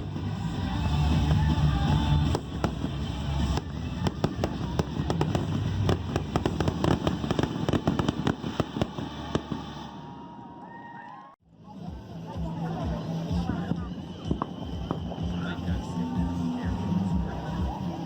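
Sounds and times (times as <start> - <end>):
music: 0.0 - 7.8, 11.4 - 18.0
fireworks cracking and banging: 0.0 - 10.2, 13.4 - 18.0.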